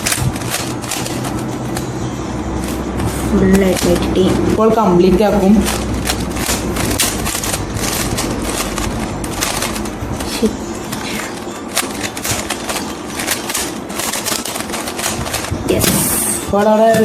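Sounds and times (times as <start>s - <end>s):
puzzle cube plastic clicks: 0.0s - 1.9s, 5.6s - 15.6s.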